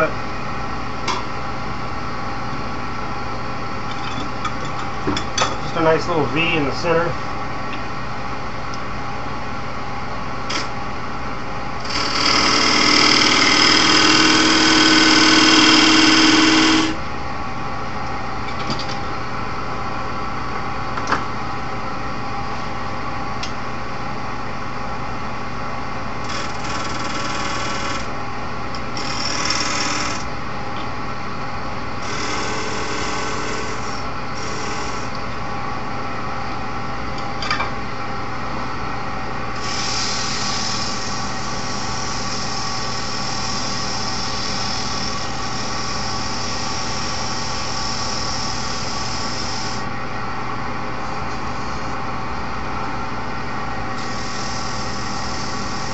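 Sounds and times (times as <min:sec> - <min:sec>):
turning tool cutting wood: 0:11.8 - 0:17.0
wood lathe running: 0:11.8 - 0:17.0, 0:26.3 - 0:28.1, 0:29.0 - 0:30.3, 0:32.0 - 0:34.0.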